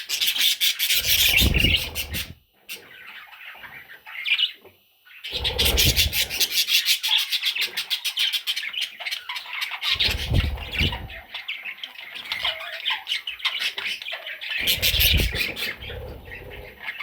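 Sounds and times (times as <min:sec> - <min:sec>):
budgie chicks begging calls: 0:00.0 - 0:17.0
low rubbing and bumping: 0:10.0 - 0:11.2.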